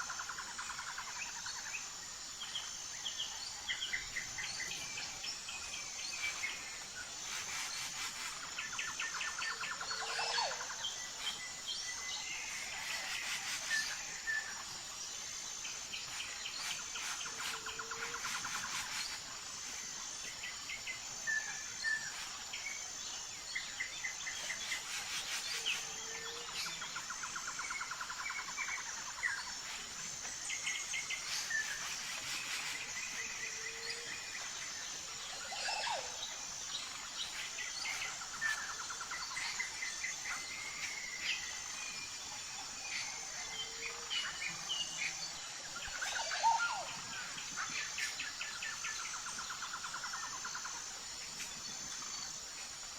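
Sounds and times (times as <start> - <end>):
high insect drone: 0.0 - 52.9
birds chirping and trilling: 3.0 - 14.5, 21.3 - 52.8.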